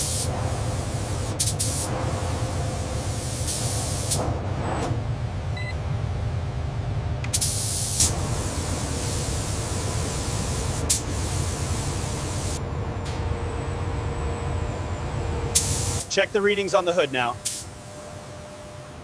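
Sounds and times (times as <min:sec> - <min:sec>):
spray gun hissing: 0:00.0 - 0:02.0, 0:02.8 - 0:04.2, 0:07.4 - 0:12.6, 0:15.6 - 0:17.8
low machine hum: 0:00.0 - 0:19.0.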